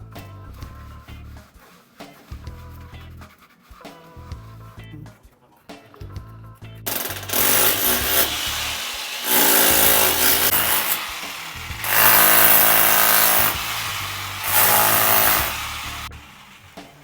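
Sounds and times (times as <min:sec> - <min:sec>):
background music: 0:00.0 - 0:17.0
power tool running: 0:06.9 - 0:16.9.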